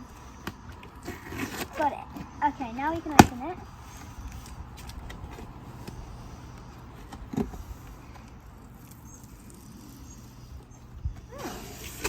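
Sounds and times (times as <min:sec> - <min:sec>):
cardboard box rustling: 0:00.0 - 0:08.6.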